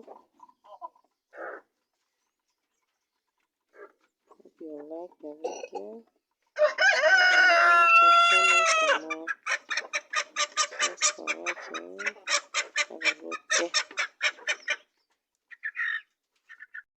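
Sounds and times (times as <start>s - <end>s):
chickens clucking: 0.0s - 16.9s.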